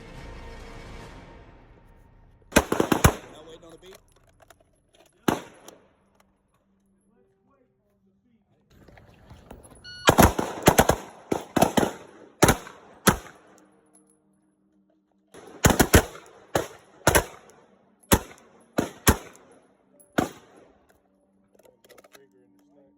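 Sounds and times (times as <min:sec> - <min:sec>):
pistol shots: 0:02.6 - 0:03.8, 0:05.2 - 0:05.8, 0:10.1 - 0:13.6, 0:15.4 - 0:19.6, 0:20.2 - 0:20.8.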